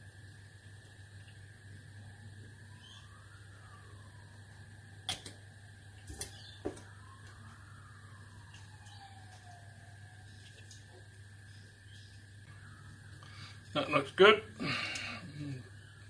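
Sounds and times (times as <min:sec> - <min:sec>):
steady low hum: 0:00.0 - 0:16.0
faint tone rising and falling: 0:02.0 - 0:05.0, 0:05.6 - 0:10.5.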